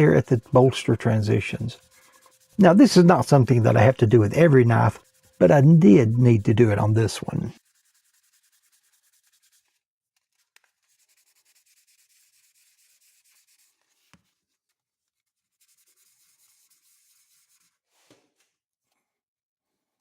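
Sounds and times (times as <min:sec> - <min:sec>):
sandpaper rubbing on handle: 0:00.0 - 0:09.8, 0:10.7 - 0:14.0, 0:15.5 - 0:17.8.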